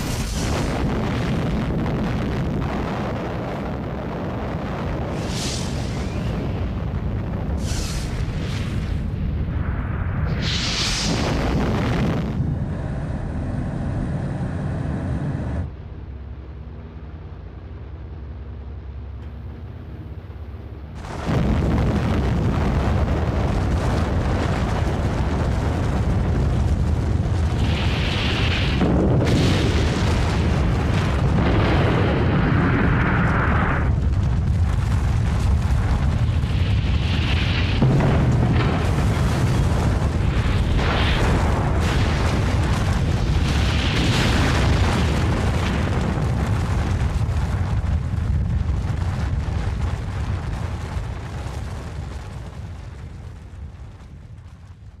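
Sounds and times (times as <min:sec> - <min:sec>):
explosion deep rumble with hissing: 0:00.0 - 0:15.8, 0:20.5 - 0:55.0.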